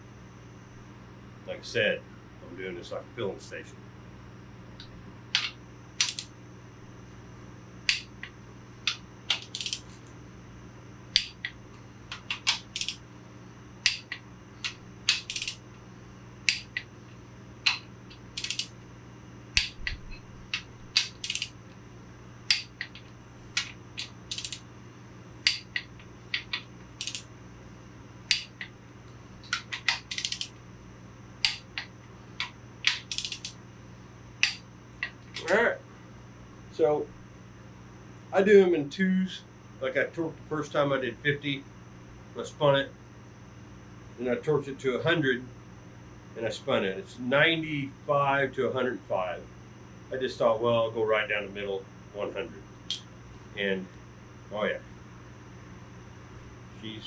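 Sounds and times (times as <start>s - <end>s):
steady low hum: 0.0s - 57.0s
ratchet wrench clicking: 5.4s - 6.3s, 8.9s - 9.9s, 11.2s - 11.4s, 12.3s - 13.0s, 15.1s - 15.6s, 18.4s - 18.7s, 21.0s - 21.5s, 23.6s - 24.6s, 26.4s - 27.2s, 29.5s - 30.5s, 32.9s - 33.5s.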